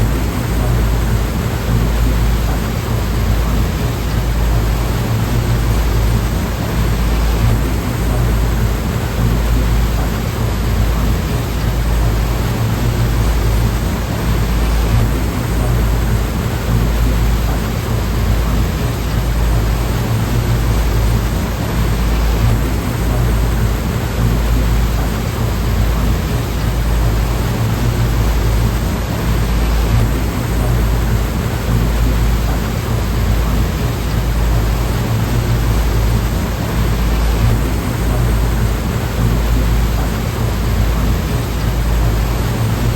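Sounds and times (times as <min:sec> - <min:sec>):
deep rumble: 0:00.0 - 0:42.9.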